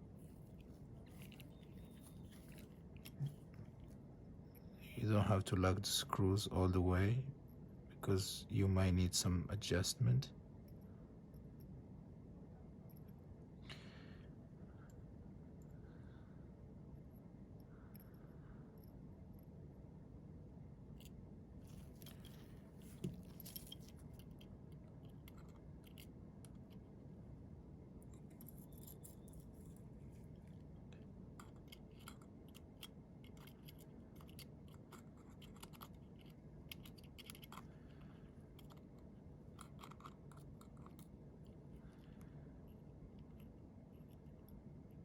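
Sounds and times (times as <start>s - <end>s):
low steady hum: 0.0s - 45.0s
tweezers clicking on tiny parts: 30.5s - 42.3s.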